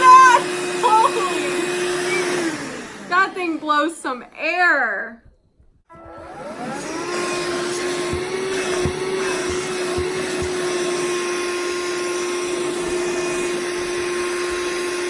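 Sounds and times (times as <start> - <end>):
handheld vacuum running: 0.0 - 3.4, 5.9 - 15.0
faint knocks: 7.7 - 11.0.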